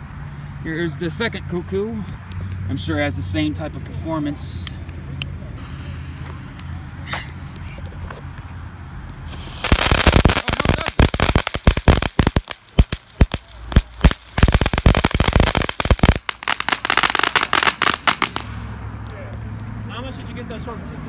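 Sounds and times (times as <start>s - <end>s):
firework crackling: 5.6s - 18.8s.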